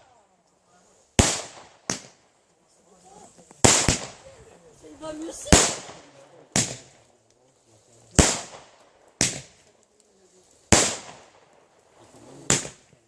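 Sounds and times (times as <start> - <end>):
fireworks bangs with echo: 1.1 - 2.3, 3.6 - 4.3, 5.3 - 7.1, 8.1 - 9.8, 10.7 - 13.0.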